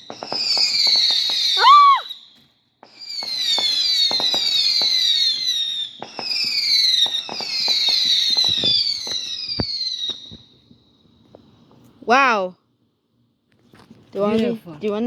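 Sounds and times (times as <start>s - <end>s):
firework whistles: 0.0s - 11.4s
firework pops and crackles: 0.0s - 12.1s.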